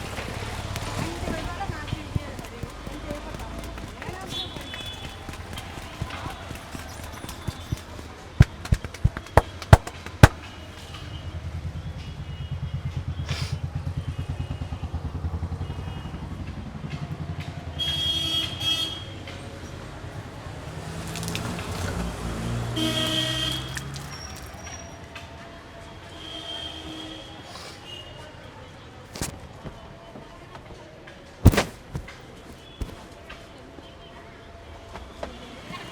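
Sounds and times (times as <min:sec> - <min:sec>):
loud sharp smacks: 0:00.0 - 0:10.5, 0:29.2 - 0:29.4, 0:31.4 - 0:33.2
vehicle horn honking: 0:17.8 - 0:19.0, 0:22.8 - 0:23.8.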